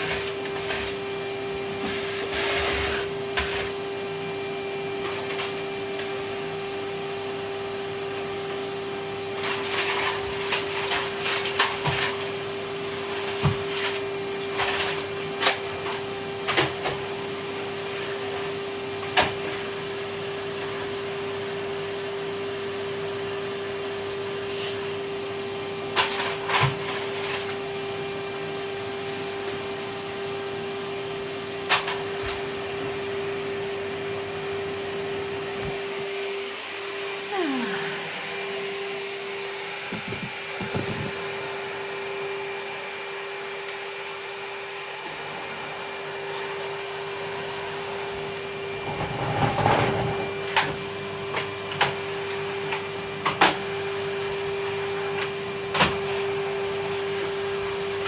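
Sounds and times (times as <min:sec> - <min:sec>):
vacuum cleaner running: 0:00.0 - 0:58.0.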